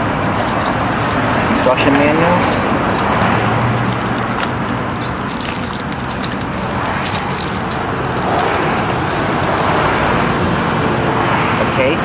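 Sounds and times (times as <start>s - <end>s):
packaging crinkling and rustling: 0.0s - 10.1s
steady background noise: 0.0s - 12.0s.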